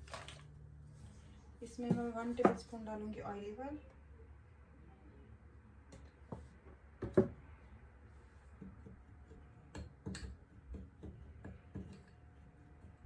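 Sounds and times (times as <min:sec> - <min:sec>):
spoon clicking and scraping bowl: 0:09.8 - 0:12.5.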